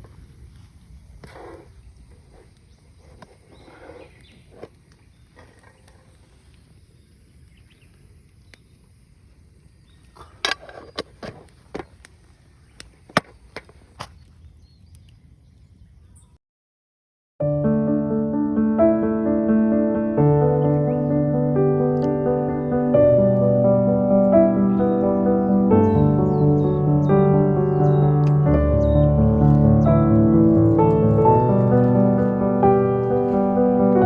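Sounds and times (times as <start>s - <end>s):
low rumble: 18.9s - 34.0s.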